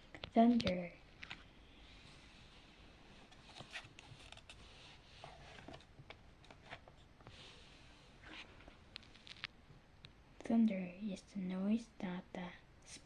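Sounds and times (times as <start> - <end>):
small clicks and rustles: 3.3 - 4.6, 8.2 - 10.2.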